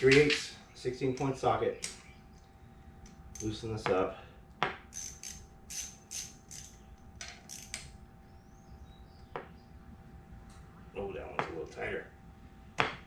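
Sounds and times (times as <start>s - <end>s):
ratchet clicking: 4.9s - 7.9s.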